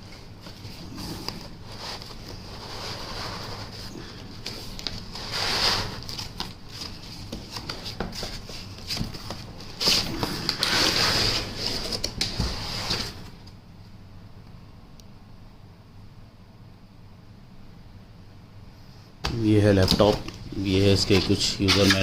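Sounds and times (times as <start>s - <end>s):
packaging rustling and crinkling: 0.4s - 13.3s.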